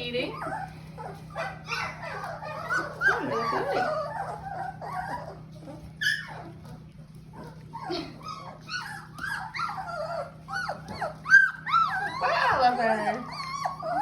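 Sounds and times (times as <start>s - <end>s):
puppies whimpering and squeaking: 0.0s - 14.0s.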